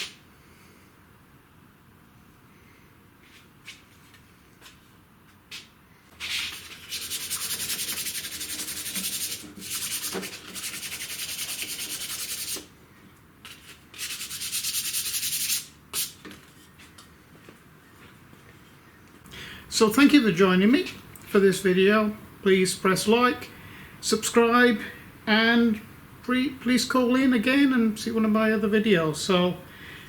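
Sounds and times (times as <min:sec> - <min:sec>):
scratchy rubbing noise: 0:06.2 - 0:12.6, 0:13.5 - 0:16.2.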